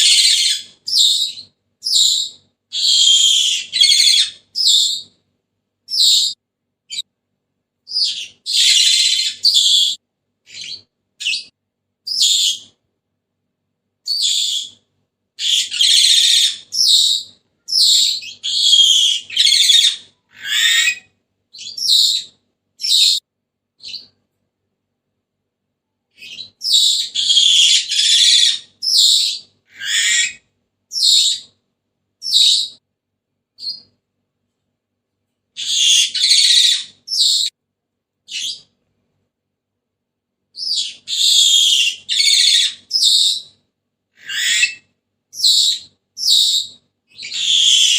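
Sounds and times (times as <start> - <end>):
parrot whistles and screeches: 0.0 - 5.1, 5.9 - 7.0, 7.9 - 11.5, 12.1 - 12.7, 14.1 - 14.8, 15.4 - 23.2, 26.2 - 31.5, 32.2 - 32.8, 35.6 - 37.5, 40.6 - 43.5, 44.2 - 47.9.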